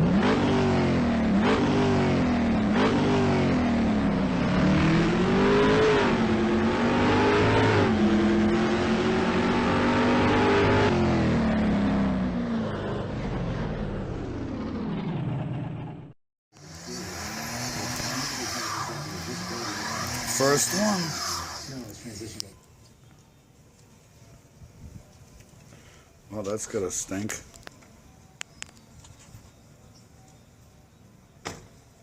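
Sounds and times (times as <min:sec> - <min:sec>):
car revving with wheels spinning: 0:00.0 - 0:22.0.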